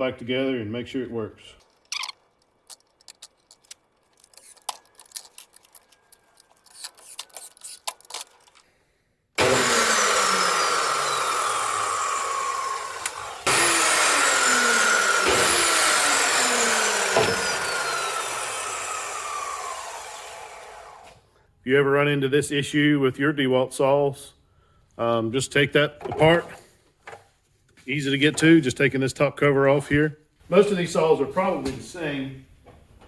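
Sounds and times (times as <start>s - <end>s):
chop saw motor starting and winding down: 9.4s - 21.3s.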